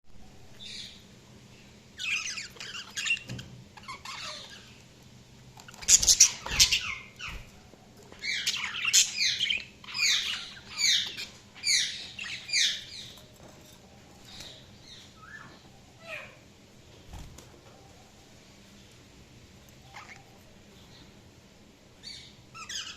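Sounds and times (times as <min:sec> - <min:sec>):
budgerigars chirping: 0:02.0 - 0:04.8, 0:05.6 - 0:07.5, 0:08.2 - 0:13.2, 0:19.9 - 0:20.4, 0:22.0 - 0:22.9.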